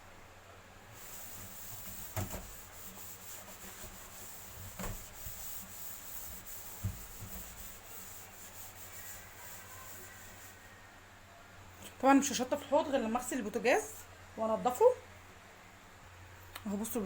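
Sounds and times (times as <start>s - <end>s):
steel wool scrubbing dishes: 0.9s - 10.6s.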